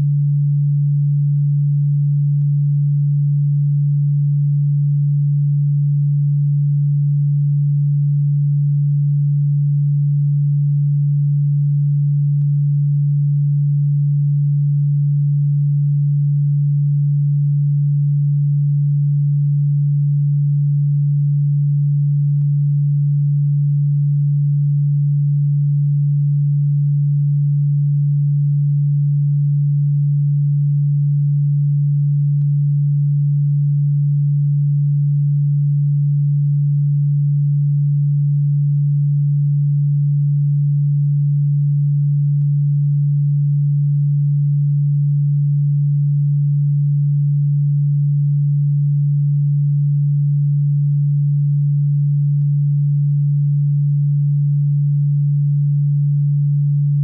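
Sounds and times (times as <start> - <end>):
low-pitched sine tone: 0.0 - 57.0.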